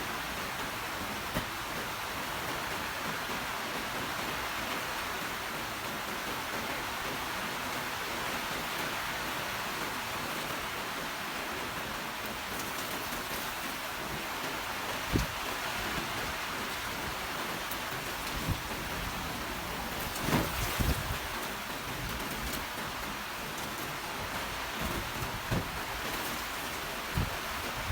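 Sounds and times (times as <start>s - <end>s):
rain pattering: 0.0s - 27.9s
dull thumps: 24.7s - 26.2s.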